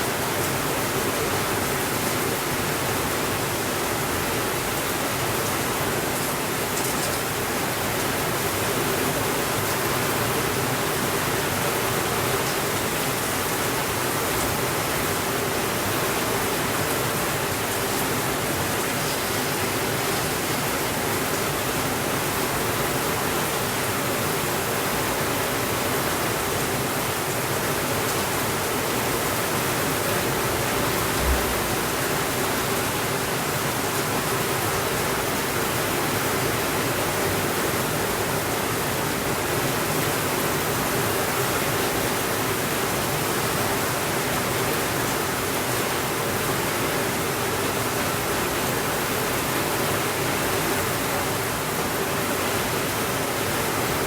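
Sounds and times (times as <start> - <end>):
heavy rainfall: 0.0 - 54.0
low thump: 31.1 - 32.0.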